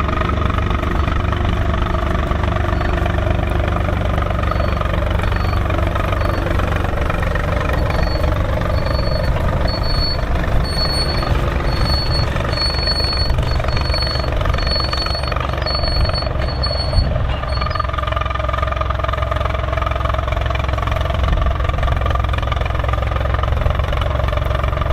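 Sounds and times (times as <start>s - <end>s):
tractor diesel engine running: 0.0s - 24.9s
high-pitched beep: 1.9s - 17.9s.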